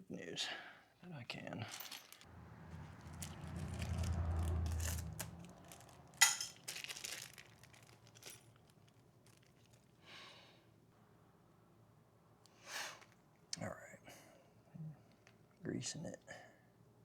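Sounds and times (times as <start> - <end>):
metal chain and tools clinking: 1.6 - 9.9
low hum: 2.3 - 6.5.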